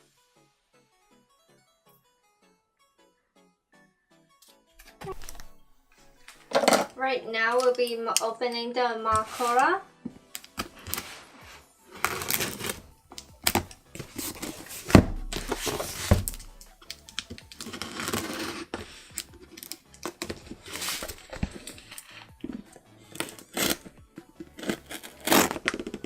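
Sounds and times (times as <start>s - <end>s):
cardboard box rustling and scraping: 10.9s - 12.8s, 14.0s - 16.6s, 17.6s - 19.0s, 20.3s - 22.3s
knock on cardboard box: 14.9s - 16.5s.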